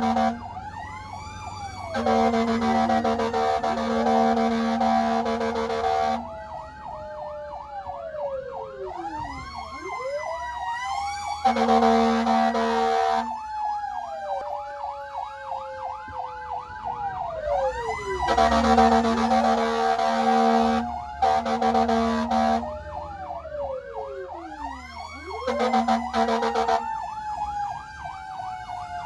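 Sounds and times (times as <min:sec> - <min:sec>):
horn blasts: 0:00.0 - 0:00.5, 0:01.9 - 0:06.3, 0:11.4 - 0:13.4, 0:18.2 - 0:22.7, 0:25.2 - 0:27.0
fire engine siren yelping: 0:00.0 - 0:29.0.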